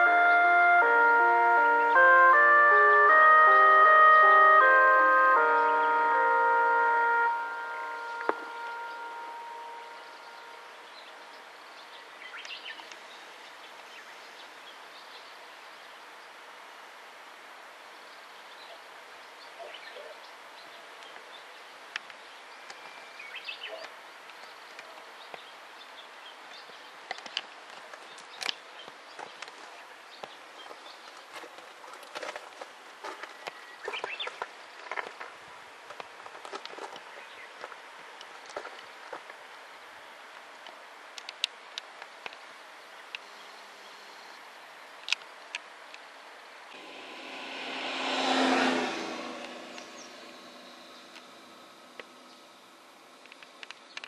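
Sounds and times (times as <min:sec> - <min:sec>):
background hiss: 0:00.0 - 0:32.0, 0:32.6 - 0:54.0.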